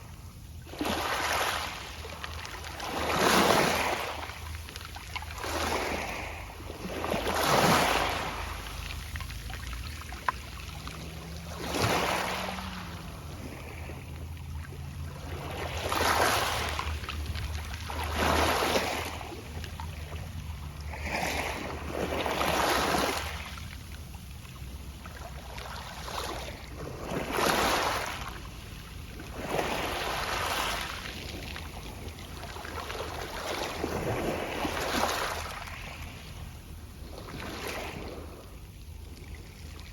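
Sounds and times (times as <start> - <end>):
waves washing onto pebble beach: 0.7 - 23.6, 29.2 - 36.1.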